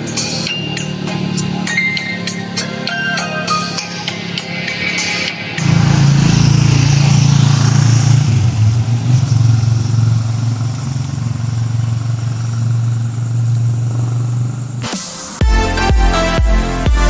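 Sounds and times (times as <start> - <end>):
music: 0.0 - 5.6, 14.8 - 17.0
road and wind noise: 0.0 - 14.8
vehicle engine droning: 0.0 - 14.9.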